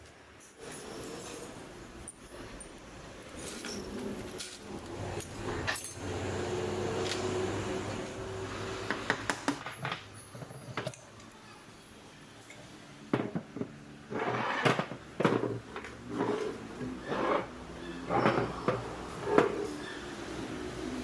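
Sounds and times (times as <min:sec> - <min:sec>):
metal tools clinking and scraping: 0:00.4 - 0:06.4, 0:09.6 - 0:11.3, 0:14.1 - 0:20.0.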